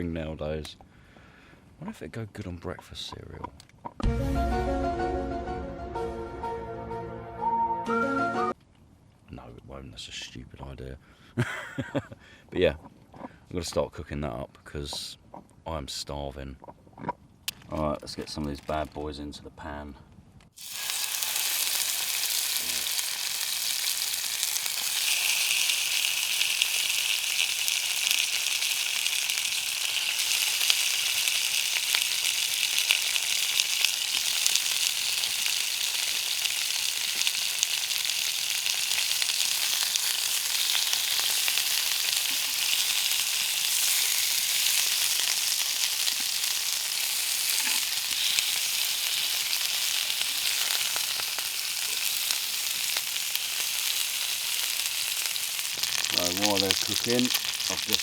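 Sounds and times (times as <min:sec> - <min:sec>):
meat sizzling in a frying pan: 0:20.6 - 0:58.0.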